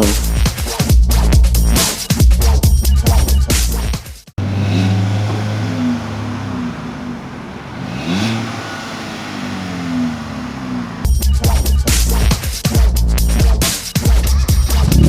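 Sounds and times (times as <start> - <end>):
car engine holding steady revs: 4.4 - 12.5, 14.3 - 15.0.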